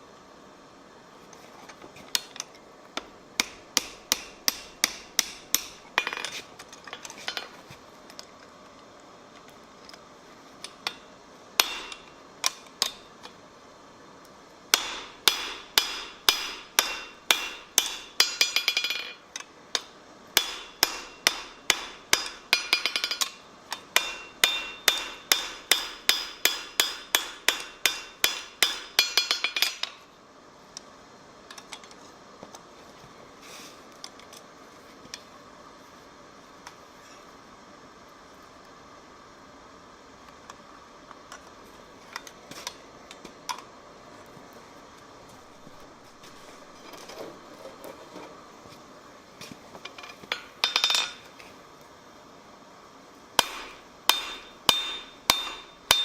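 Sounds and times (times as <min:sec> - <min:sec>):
hammer ringing on anvil: 0:11.6 - 0:12.1, 0:14.8 - 0:19.0, 0:20.4 - 0:23.0, 0:24.0 - 0:29.5, 0:53.4 - 0:56.0.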